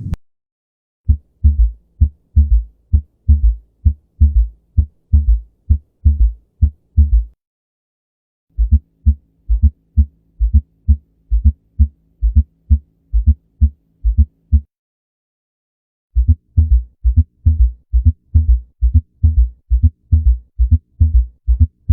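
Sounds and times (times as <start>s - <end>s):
low thumping heartbeats: 1.1s - 7.4s, 8.6s - 14.7s, 16.2s - 21.9s
steady low hum: 1.1s - 7.4s.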